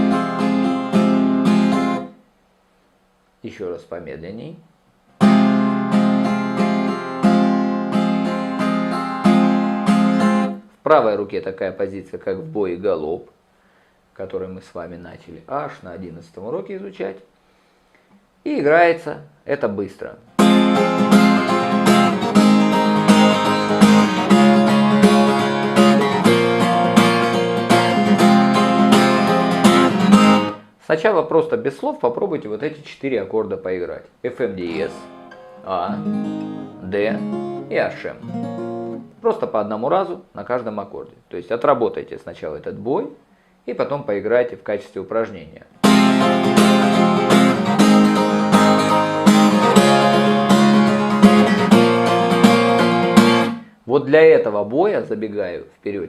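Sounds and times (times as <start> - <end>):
acoustic guitar strumming: 0.0 - 2.2, 5.2 - 10.7, 20.3 - 30.6, 34.6 - 39.2, 45.8 - 53.8.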